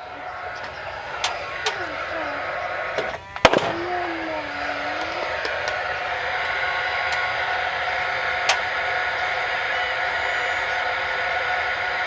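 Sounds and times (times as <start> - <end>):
mechanical whirring: 0.0 - 12.0
sharp loud crack: 3.0 - 5.9.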